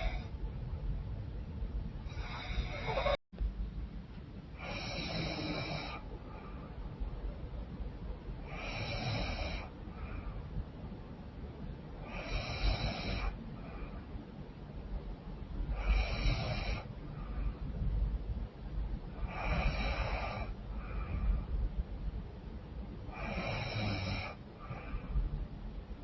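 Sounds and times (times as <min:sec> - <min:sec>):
woman snoring through blocked nose: 0:04.6 - 0:06.0, 0:08.5 - 0:09.7, 0:12.0 - 0:13.4, 0:15.8 - 0:16.9, 0:19.2 - 0:20.6, 0:23.2 - 0:24.4.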